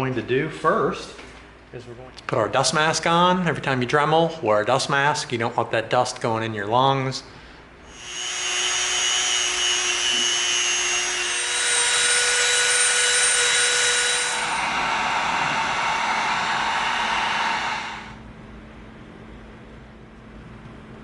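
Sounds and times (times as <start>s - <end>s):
rotary tool grinding foam: 7.9s - 18.2s.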